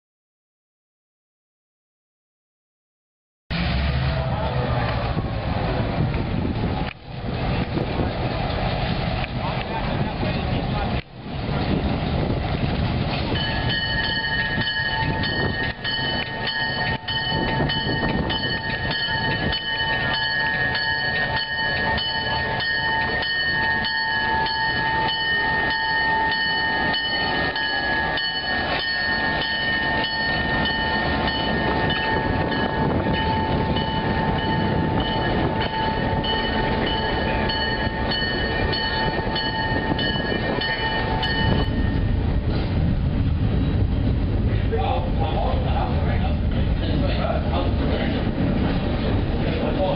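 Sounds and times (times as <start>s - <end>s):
train rumble: 3.5s - 49.9s
high ringing tone: 13.3s - 42.2s.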